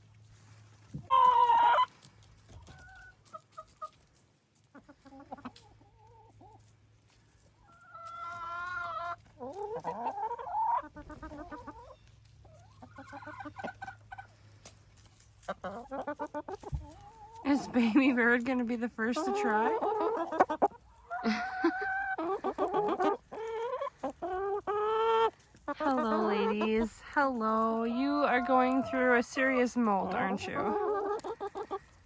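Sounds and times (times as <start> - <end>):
chickens clucking and squawking: 0.1 - 32.0.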